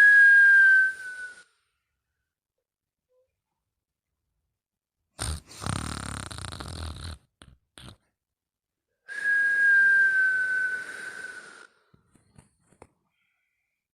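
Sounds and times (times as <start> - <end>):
high whistling breath: 0.0 - 1.9, 9.1 - 12.0
person snoring: 5.2 - 7.2.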